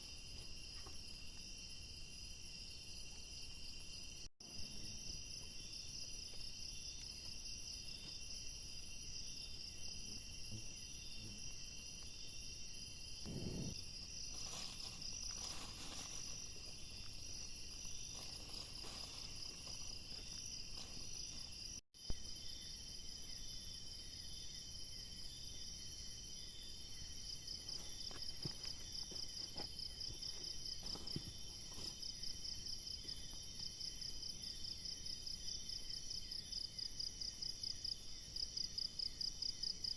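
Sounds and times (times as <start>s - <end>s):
insects trilling: 0.0s - 39.9s.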